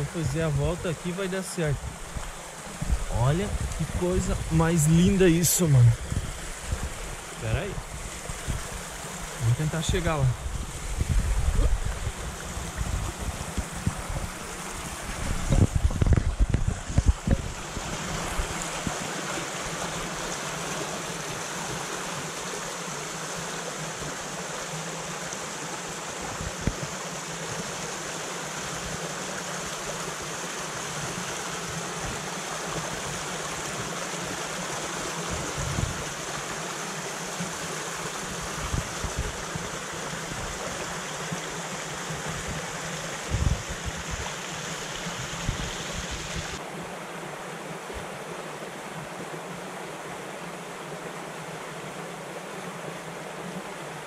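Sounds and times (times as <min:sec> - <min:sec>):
stream running over rocks: 0:00.0 - 0:54.0.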